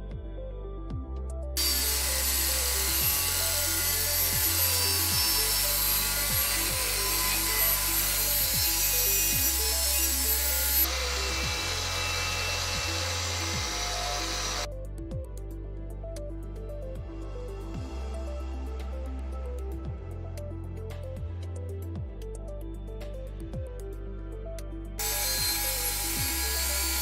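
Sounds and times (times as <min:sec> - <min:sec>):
background music: 0:00.0 - 0:27.0
angle grinder grinding iron: 0:01.6 - 0:14.7, 0:25.0 - 0:27.0.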